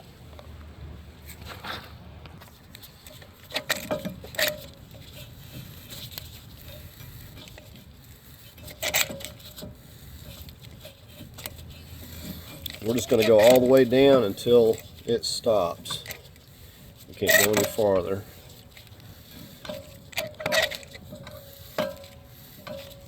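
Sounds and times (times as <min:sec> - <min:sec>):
metal tools clicking and clattering: 0:12.2 - 0:16.3, 0:17.1 - 0:19.0, 0:19.6 - 0:23.0.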